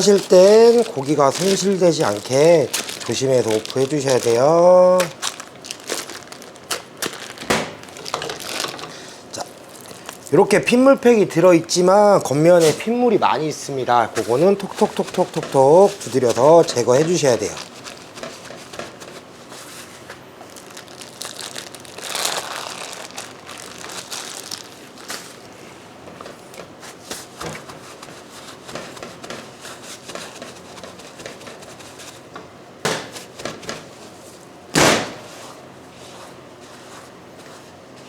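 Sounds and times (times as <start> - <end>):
paper towels crinkling and patting: 0.0 - 32.4, 33.0 - 38.0
heavy thuds: 34.8 - 35.4.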